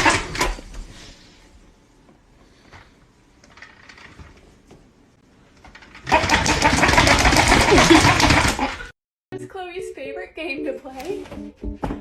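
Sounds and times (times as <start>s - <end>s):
loud fast mechanical rattle: 5.8s - 8.9s.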